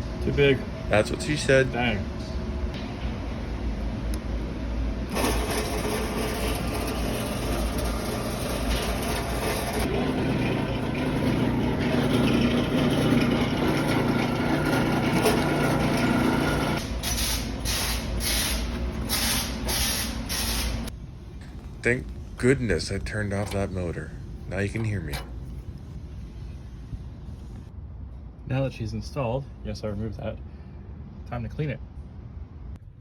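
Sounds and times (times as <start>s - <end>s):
diesel truck engine rumbling: 5.0s - 27.6s.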